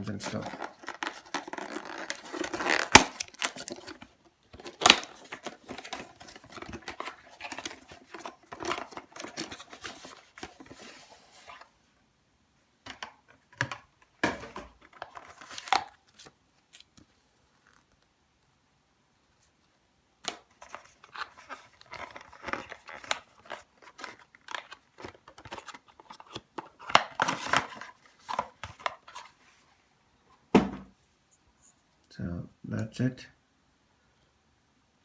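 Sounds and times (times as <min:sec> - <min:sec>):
packaging crinkling and tearing: 0:00.1 - 0:11.6, 0:20.6 - 0:29.3
packaging snaps: 0:00.2 - 0:10.0.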